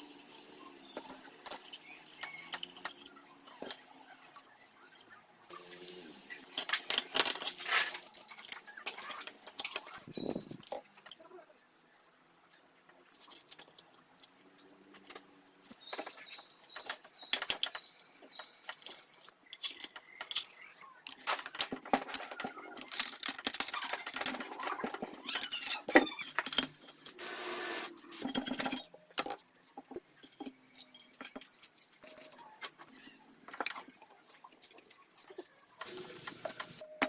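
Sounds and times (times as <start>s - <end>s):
metal tools clinking and rattling: 6.5s - 11.2s, 13.2s - 27.1s, 28.0s - 37.0s.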